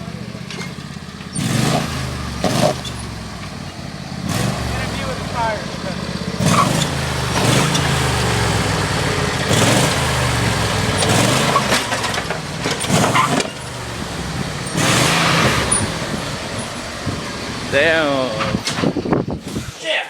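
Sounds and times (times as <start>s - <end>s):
riding lawnmower engine running: 0.0s - 19.7s
bursts of rushing noise: 6.4s - 19.8s.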